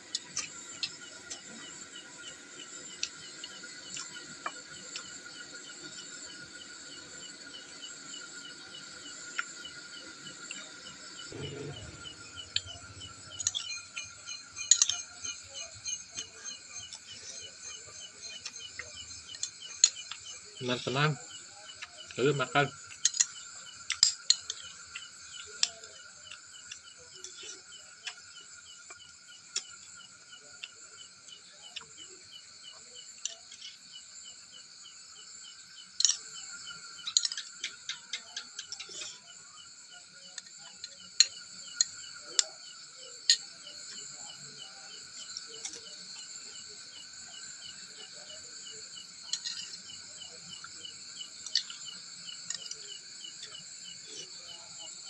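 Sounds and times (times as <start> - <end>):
crickets chirping: 0.0 - 55.0
cutlery clinking on dishes: 13.4 - 15.4.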